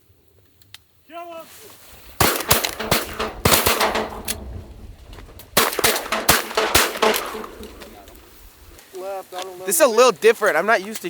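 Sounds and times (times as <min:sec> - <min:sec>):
shotgun blasts: 0:02.2 - 0:08.6.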